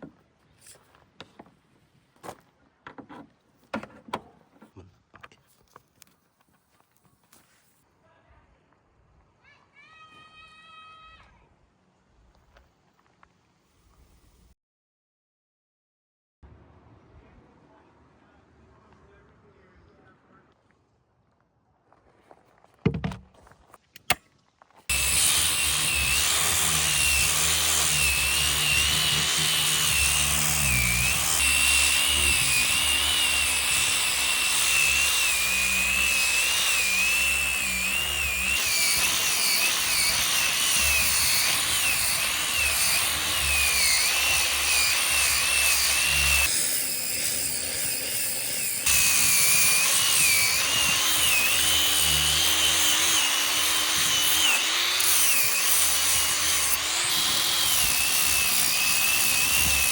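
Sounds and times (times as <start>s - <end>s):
power tool cutting wood: 24.9s - 59.9s.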